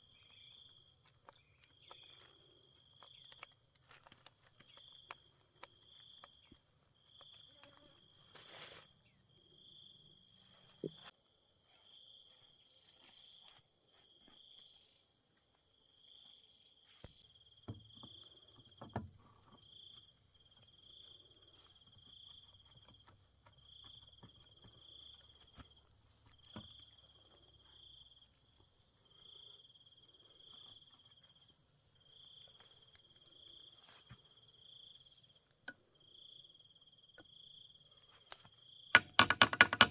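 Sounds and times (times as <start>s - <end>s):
insects trilling: 0.0s - 15.2s, 16.0s - 39.8s
insect chirp pulsing: 0.0s - 39.9s
small clicks and knocks: 39.0s - 39.9s.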